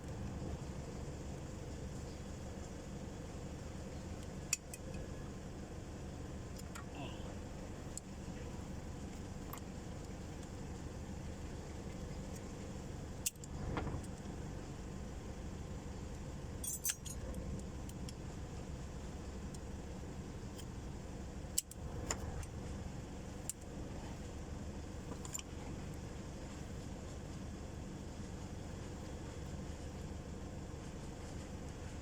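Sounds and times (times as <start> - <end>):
low mechanical hum: 0.0 - 32.0
metal tools clinking on engine: 16.6 - 17.4, 25.1 - 25.5.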